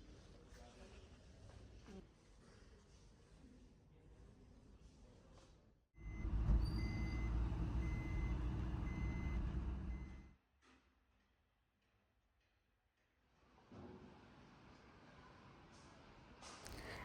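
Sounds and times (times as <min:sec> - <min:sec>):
electronic warning beeps: 0:06.0 - 0:10.3
vehicle rumbling: 0:06.0 - 0:10.3.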